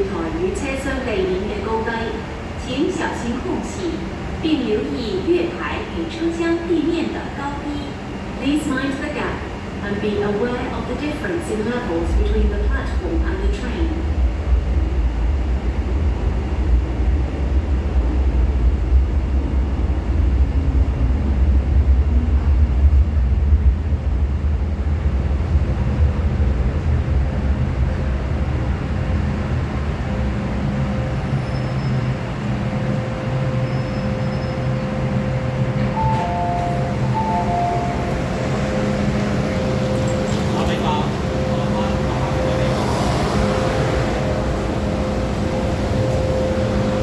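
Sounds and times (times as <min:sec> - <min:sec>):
metro train rumble and hum: 0:00.0 - 0:47.0
faint steady tones: 0:31.8 - 0:47.0.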